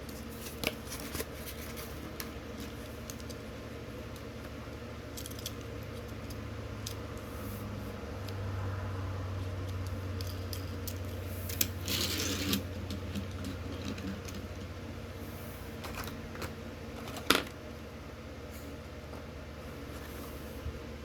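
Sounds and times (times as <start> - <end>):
packaging clicks and rustles: 0.0 - 3.4
steady low hum: 0.0 - 21.0.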